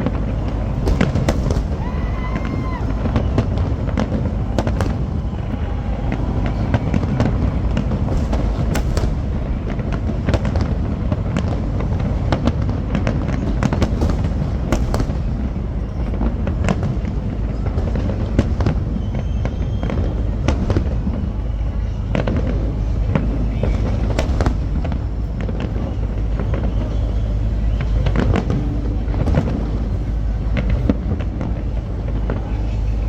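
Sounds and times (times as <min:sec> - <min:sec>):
low rumble: 0:00.0 - 0:19.4, 0:20.1 - 0:33.0
fireworks bangs and crackles: 0:00.0 - 0:33.0.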